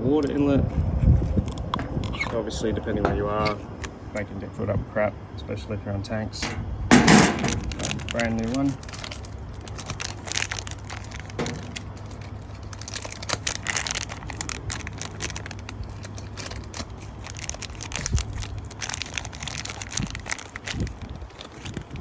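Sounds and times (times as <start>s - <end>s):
steady low hum: 0.0s - 22.0s
clicks and scrapes of parts: 6.4s - 8.6s
plastic crinkling: 6.9s - 22.0s.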